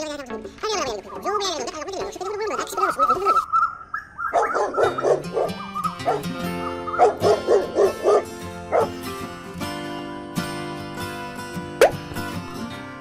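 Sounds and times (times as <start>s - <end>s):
background music: 0.0s - 3.4s, 4.4s - 13.0s
dog yipping and whimpering: 3.5s - 8.9s.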